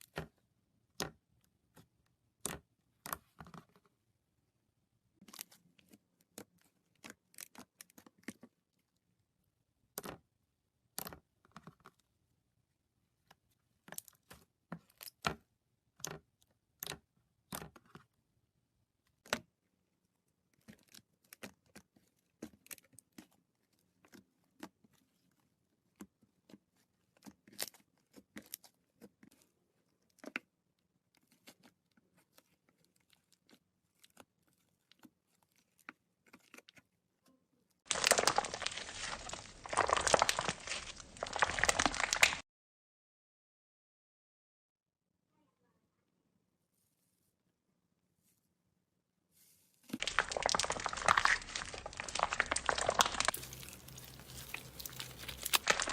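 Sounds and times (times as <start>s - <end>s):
slime clicking and popping: 37.9s - 42.4s, 50.0s - 55.9s.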